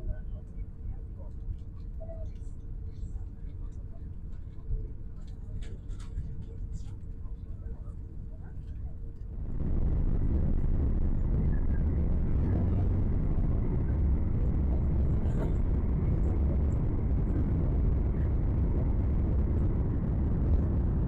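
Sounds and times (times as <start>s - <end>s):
jet airliner cabin rumble: 2.9s - 21.0s
faint high hum: 9.2s - 21.0s.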